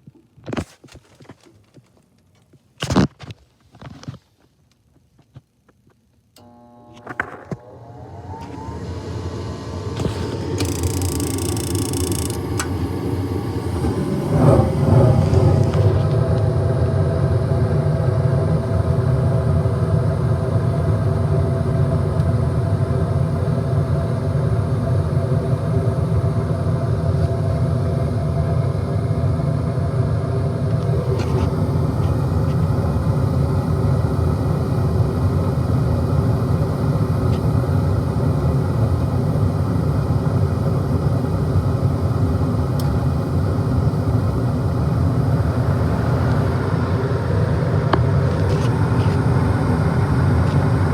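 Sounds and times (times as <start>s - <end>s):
furnace hum: 6.3s - 50.9s
furnace rumble: 6.4s - 22.1s, 40.4s - 50.9s.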